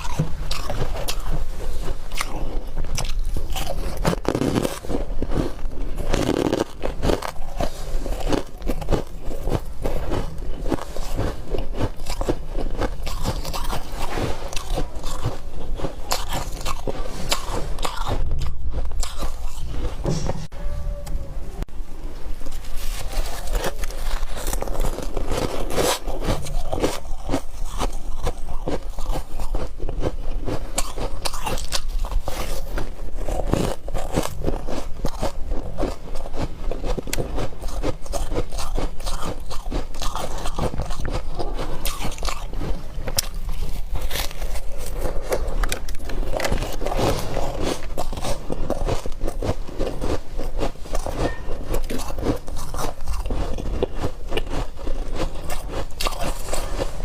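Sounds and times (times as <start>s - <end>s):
chewing and crunching ice: 0.0s - 20.0s, 22.8s - 57.0s.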